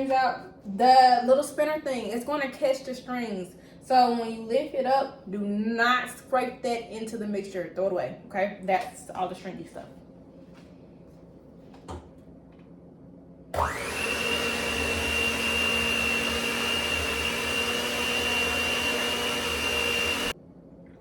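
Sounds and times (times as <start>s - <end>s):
electric mixer motor whine: 13.6s - 20.4s.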